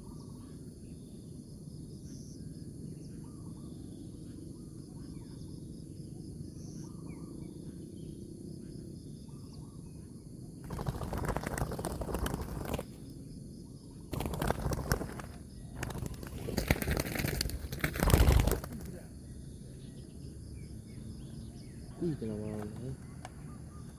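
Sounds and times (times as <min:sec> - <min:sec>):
faint bird chirps: 0:00.0 - 0:23.9
insects buzzing: 0:00.0 - 0:23.9
dove wings flapping: 0:10.6 - 0:13.3, 0:14.1 - 0:19.1.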